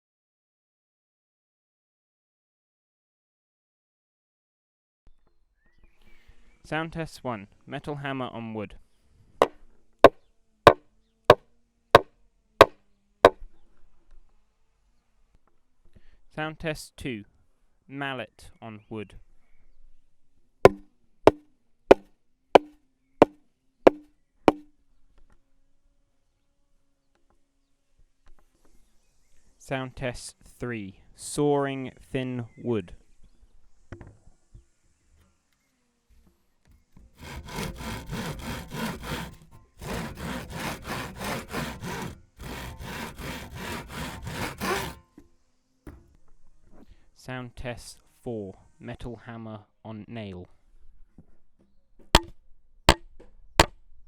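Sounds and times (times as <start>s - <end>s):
mallet knocking on wood: 20.7s - 22.0s, 22.6s - 24.6s
saw cutting thin wood: 20.7s - 22.0s, 23.9s - 24.6s, 37.2s - 45.1s.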